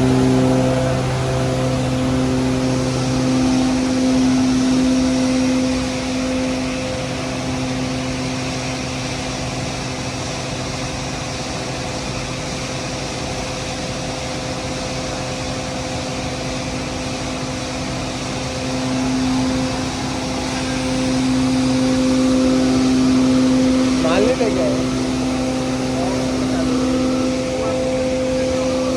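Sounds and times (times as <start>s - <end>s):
feed grinder machine running: 0.0s - 9.2s, 17.7s - 28.9s.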